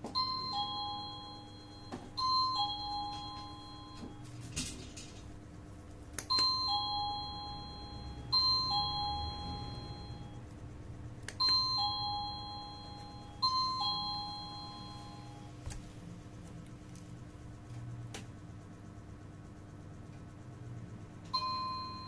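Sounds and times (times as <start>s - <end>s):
electronic ding-dong doorbell chime: 0.2s - 4.3s, 6.3s - 10.4s, 11.4s - 15.5s, 21.4s - 22.0s.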